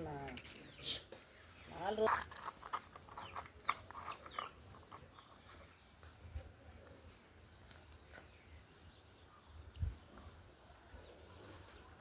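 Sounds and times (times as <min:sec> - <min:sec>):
bird chirps: 0:00.5 - 0:11.8.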